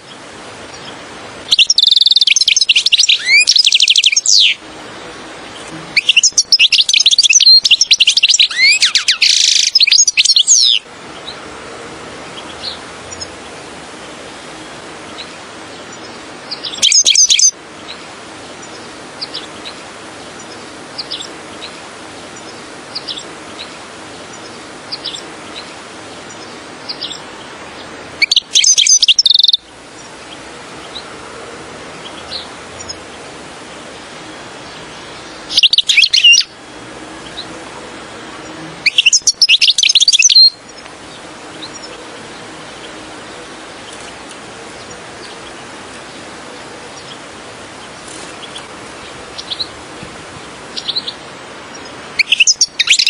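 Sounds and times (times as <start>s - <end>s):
rapid high bird twittering: 0.0s - 4.6s, 5.5s - 11.5s, 12.3s - 31.1s, 31.9s - 36.6s, 38.4s - 53.0s
steady hiss: 0.0s - 53.0s.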